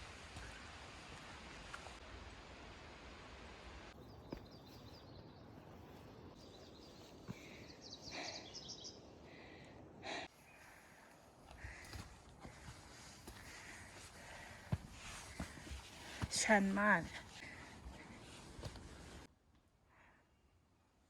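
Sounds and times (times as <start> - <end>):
steady outdoor ambience: 0.0 - 21.0
bird chirps: 6.4 - 9.1
person breathing: 7.2 - 16.3, 17.2 - 19.1.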